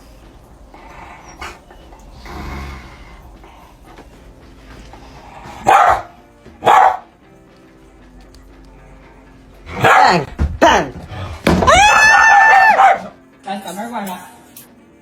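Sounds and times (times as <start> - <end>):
dog barking: 5.6 - 7.1, 9.7 - 10.3, 12.3 - 13.2.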